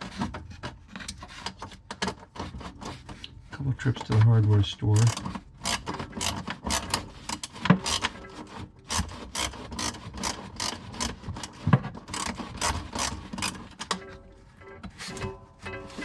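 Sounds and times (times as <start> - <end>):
hand tool rasping strokes: 4.9 - 13.8.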